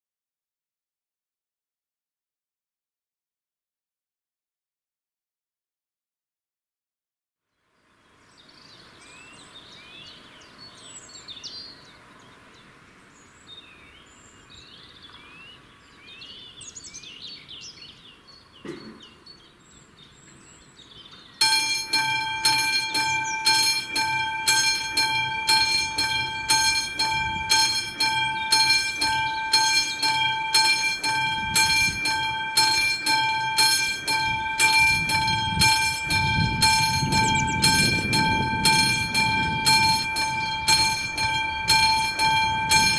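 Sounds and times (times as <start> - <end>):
birds chirping: 7.6 - 42.9
low rumble of train: 21.2 - 42.9
level crossing warning bell: 21.4 - 42.9.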